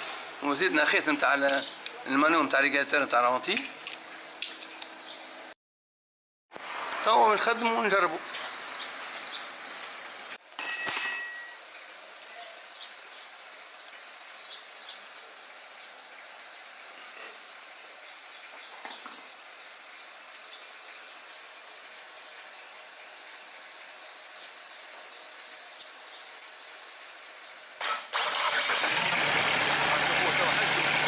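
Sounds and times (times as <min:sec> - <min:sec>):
bird chirps: 0:08.2 - 0:09.8, 0:11.9 - 0:27.8
metallic clink ringing: 0:10.6 - 0:11.6.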